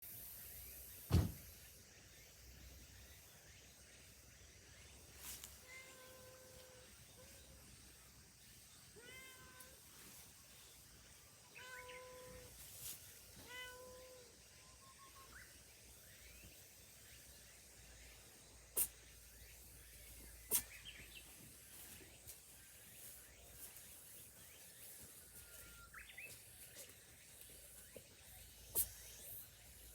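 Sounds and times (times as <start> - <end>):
cat meowing: 5.6 - 6.8, 9.0 - 9.8, 11.5 - 12.5, 13.4 - 14.3
cat sneezing: 20.5 - 20.8.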